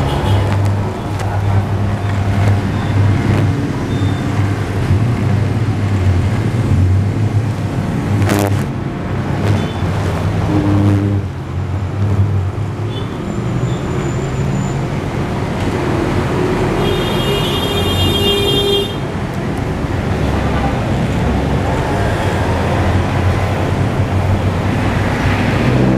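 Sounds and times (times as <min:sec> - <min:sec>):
road traffic rumble: 0:00.0 - 0:25.9
vehicle horn: 0:16.8 - 0:19.1.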